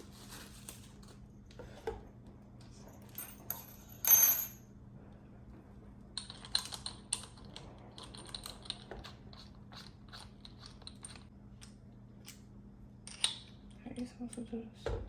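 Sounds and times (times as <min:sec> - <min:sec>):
metallic clatter with ring: 0:03.0 - 0:04.6
small metal tools clinking: 0:03.0 - 0:04.6.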